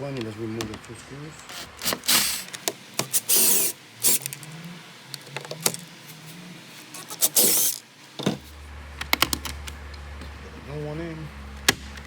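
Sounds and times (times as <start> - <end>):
loud scraping bursts: 1.5 - 2.5, 3.1 - 4.8, 6.6 - 7.8
sharp tool clicks: 1.5 - 4.4.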